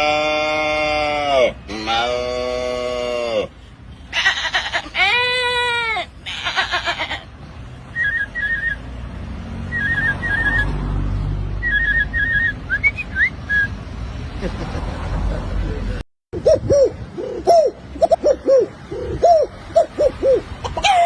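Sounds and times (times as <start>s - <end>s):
man making buzzy calls: 0.0s - 3.5s
man imitating goat bleat: 0.0s - 7.3s
whistled bird-like chirps: 7.9s - 8.9s, 9.7s - 10.8s, 11.6s - 13.8s
quick rising whistles: 9.7s - 10.8s, 11.6s - 13.8s.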